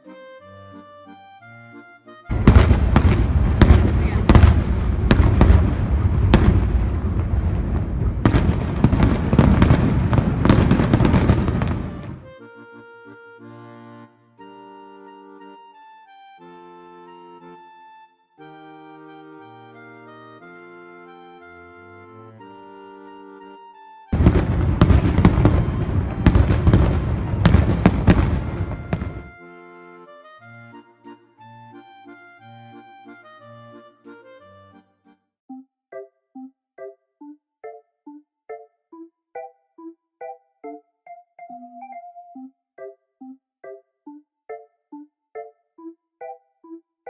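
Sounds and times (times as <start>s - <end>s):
background music: 0.0s - 46.8s
fireworks rumbling and cracking: 2.3s - 12.3s, 24.2s - 29.3s.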